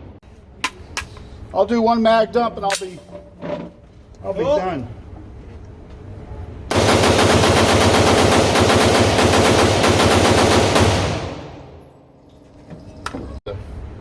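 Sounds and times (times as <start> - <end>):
rifle rapid fire: 6.7 - 11.8.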